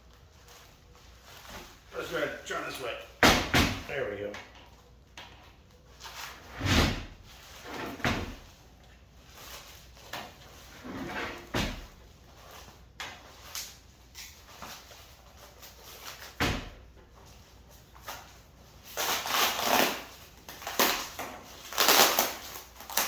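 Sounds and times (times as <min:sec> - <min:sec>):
packing rustling: 0:18.0 - 0:23.0.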